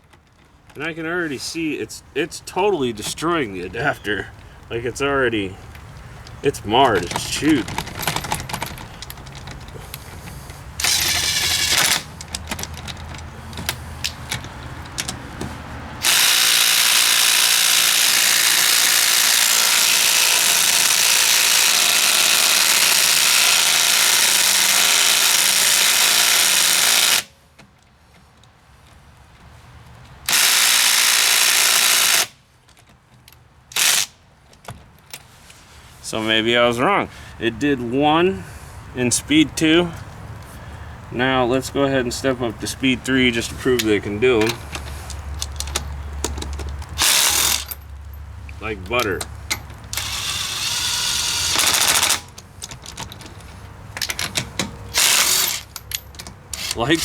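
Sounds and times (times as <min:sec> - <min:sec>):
impact wrench hammering: 0:10.8 - 0:12.1, 0:16.0 - 0:27.3, 0:47.0 - 0:47.7, 0:49.5 - 0:52.3, 0:54.2 - 0:55.8.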